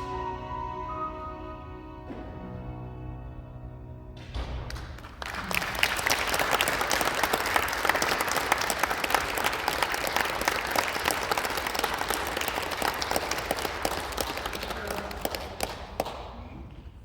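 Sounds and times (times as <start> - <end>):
music chord: 0.0 - 4.5
audience applauding: 4.7 - 16.8.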